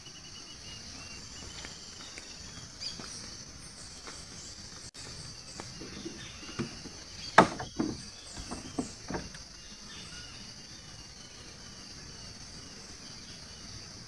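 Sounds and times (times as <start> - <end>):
crickets chirping: 0.0 - 14.0
sharp knocks: 6.0 - 9.4.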